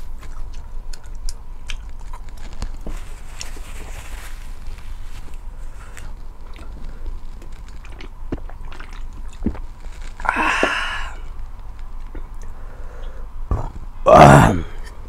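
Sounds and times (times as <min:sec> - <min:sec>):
wet chewing: 0:00.0 - 0:12.6
noodle slurp: 0:05.3 - 0:11.3.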